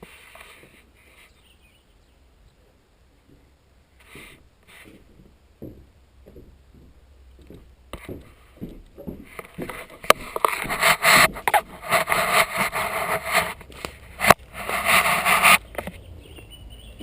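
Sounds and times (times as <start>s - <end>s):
loud scraping and rubbing: 9.3s - 16.0s.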